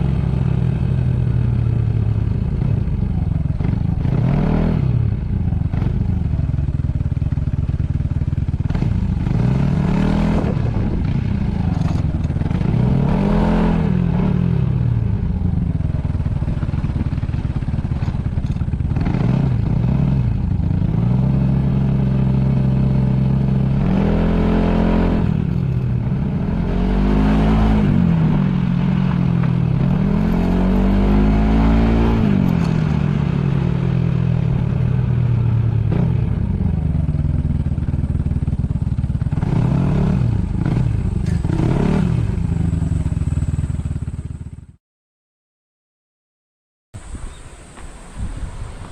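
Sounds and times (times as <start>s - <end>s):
scooter engine revving: 0.0s - 44.7s
wind rumble on microphone: 8.6s - 24.1s, 47.0s - 48.9s.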